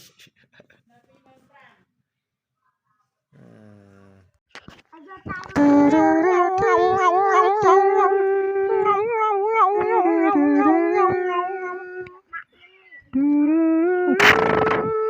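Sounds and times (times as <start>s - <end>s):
dog howling: 5.6s - 12.2s.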